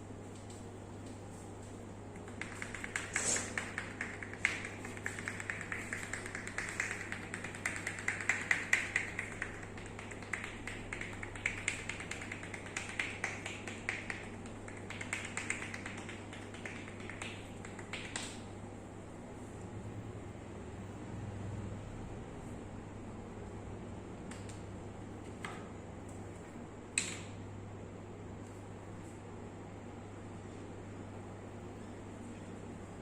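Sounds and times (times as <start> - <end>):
hand taps and slaps on skin: 2.2 - 18.4.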